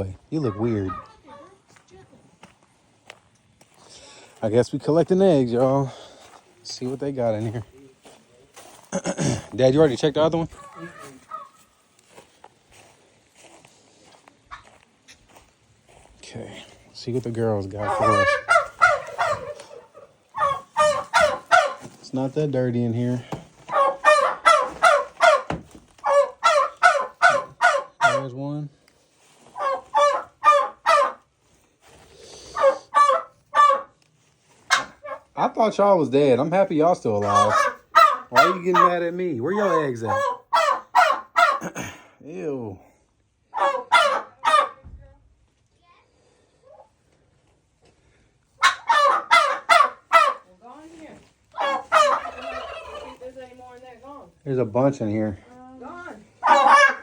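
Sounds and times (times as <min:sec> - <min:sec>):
hens squawking loudly: 0:00.4 - 0:01.2, 0:10.5 - 0:11.8, 0:17.5 - 0:22.3, 0:23.2 - 0:28.3, 0:29.4 - 0:31.3, 0:32.0 - 0:34.0, 0:34.7 - 0:35.4, 0:37.1 - 0:41.9, 0:43.5 - 0:44.8, 0:48.6 - 0:50.8, 0:51.5 - 0:53.4, 0:55.8 - 0:57.0.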